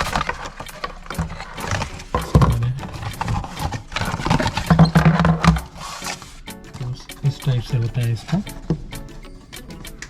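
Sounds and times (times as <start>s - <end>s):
plastic toy and packaging handled: 0.0s - 7.0s.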